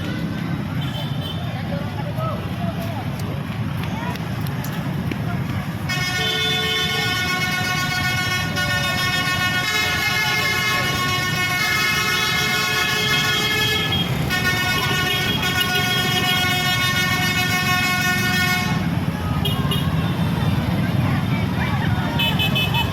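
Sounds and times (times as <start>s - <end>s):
multi-tone musical bus horn: 5.9s - 20.3s, 22.2s - 22.9s.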